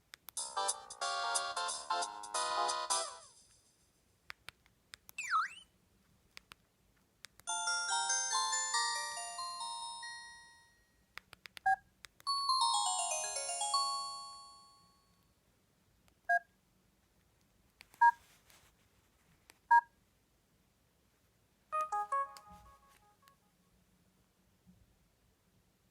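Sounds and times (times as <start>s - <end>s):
phone ringtone melody: 7.5s - 10.8s, 12.3s - 14.9s, 21.8s - 23.2s.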